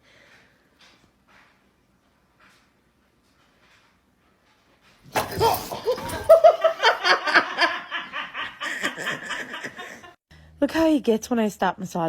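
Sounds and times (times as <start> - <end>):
person laughing hard: 5.2 - 10.2.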